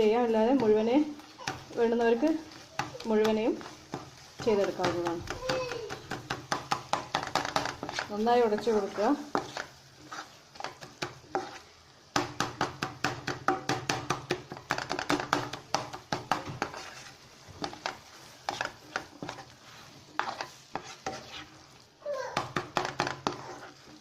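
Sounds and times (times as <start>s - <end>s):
spoon knocking and scraping pan: 0.0s - 24.0s.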